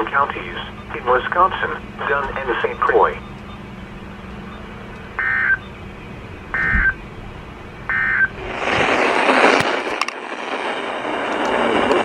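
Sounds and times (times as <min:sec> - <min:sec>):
buzzing digital data bursts: 0:04.4 - 0:05.8, 0:06.5 - 0:07.1, 0:07.9 - 0:08.6
loud hiss of noise: 0:06.5 - 0:12.0.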